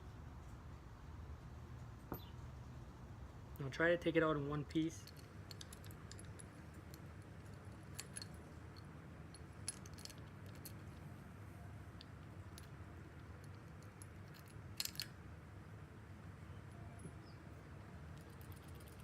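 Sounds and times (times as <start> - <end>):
low steady hum: 0.0 - 19.0
small metal parts clicking: 4.7 - 11.2, 11.9 - 15.2, 17.8 - 19.0.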